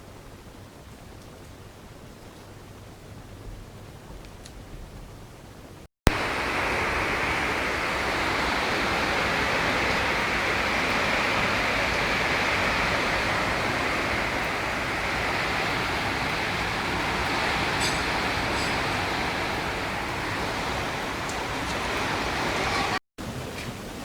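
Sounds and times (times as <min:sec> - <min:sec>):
loud steady hissing rush: 0:06.1 - 0:24.0.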